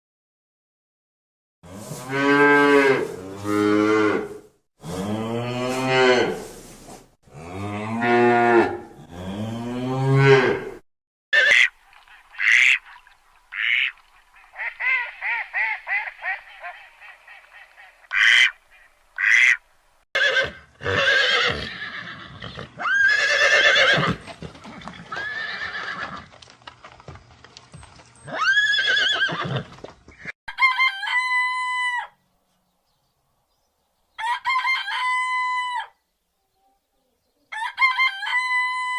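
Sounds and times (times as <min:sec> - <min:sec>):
cow mooing: 0:02.0 - 0:06.5, 0:07.3 - 0:10.8
waterfowl honking and quacking: 0:11.4 - 0:19.6.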